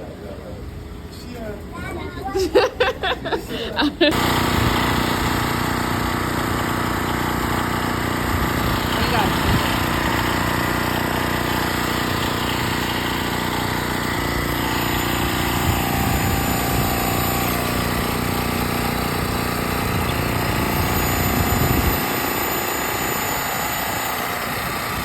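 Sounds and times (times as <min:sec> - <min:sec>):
electric balloon inflator motor hum: 0:03.5 - 0:25.0
wind buffeting microphone: 0:08.2 - 0:10.3, 0:15.4 - 0:18.0, 0:19.3 - 0:25.0.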